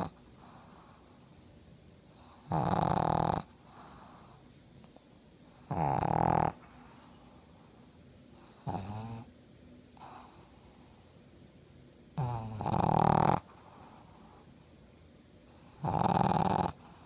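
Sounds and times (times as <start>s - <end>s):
dog snoring: 0.0s - 1.1s, 2.1s - 4.4s, 5.5s - 7.5s, 8.3s - 9.3s, 10.0s - 11.2s, 12.2s - 14.5s, 15.4s - 17.0s
faint breaths: 0.0s - 2.5s, 3.4s - 5.9s, 6.5s - 11.8s, 13.4s - 15.9s, 16.7s - 17.0s.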